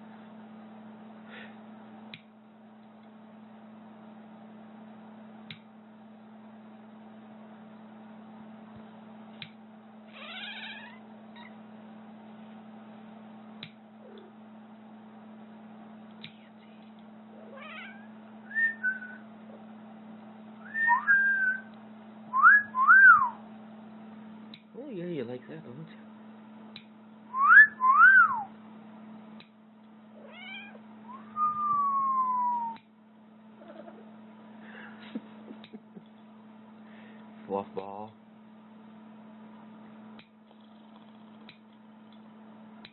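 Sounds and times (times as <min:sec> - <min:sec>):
steady low hum: 0:00.0 - 0:42.9
cat meowing: 0:10.1 - 0:11.5, 0:17.4 - 0:18.1, 0:30.2 - 0:32.7.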